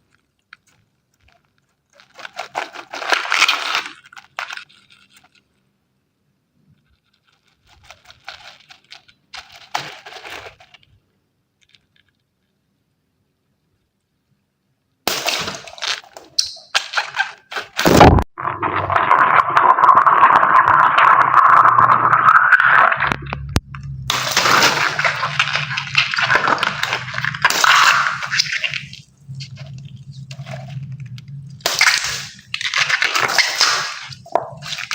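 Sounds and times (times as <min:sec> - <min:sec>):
water spraying and splashing: 0:24.1 - 0:29.5.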